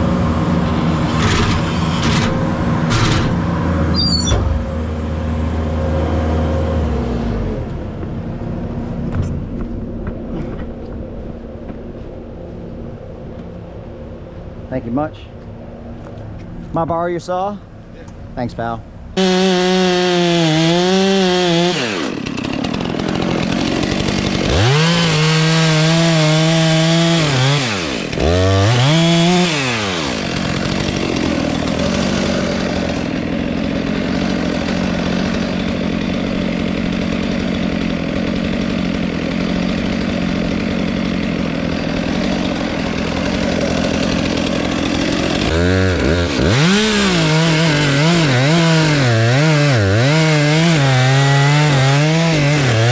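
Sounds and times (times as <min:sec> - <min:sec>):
chainsaw revving and sawing wood: 0:00.0 - 0:07.8, 0:19.2 - 0:52.9.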